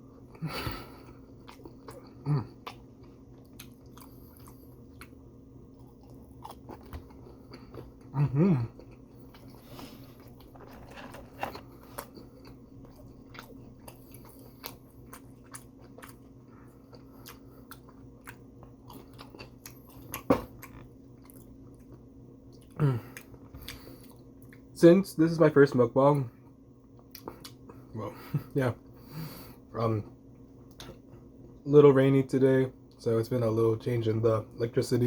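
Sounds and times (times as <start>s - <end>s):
steady low hum: 0.0s - 35.0s
person chewing crunchy food: 0.1s - 24.7s, 26.9s - 27.8s
person humming: 8.2s - 8.8s.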